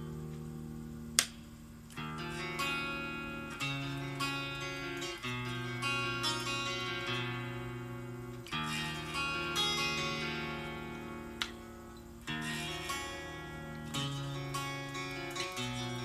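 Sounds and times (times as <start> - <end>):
guitar played slowly: 0.0 - 16.0
sharp click: 1.1 - 1.4, 11.4 - 11.6.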